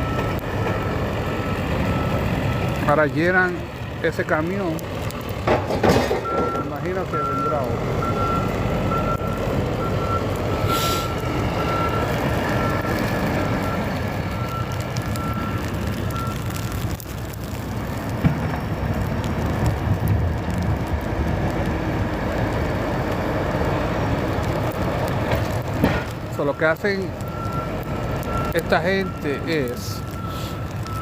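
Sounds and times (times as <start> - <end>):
big engine rumbling under load: 0.0 - 31.0
short hiss: 10.7 - 11.1, 30.3 - 30.6.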